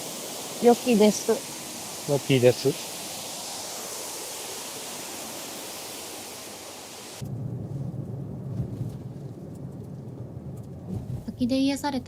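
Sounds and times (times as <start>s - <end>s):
waterfall rushing hiss: 0.0s - 7.2s
low rumble: 7.2s - 12.0s.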